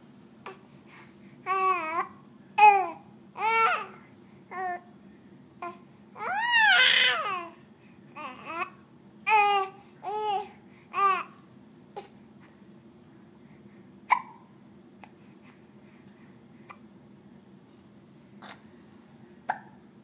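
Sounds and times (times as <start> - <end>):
baby hiccups: 14.1 - 14.5, 19.5 - 19.8.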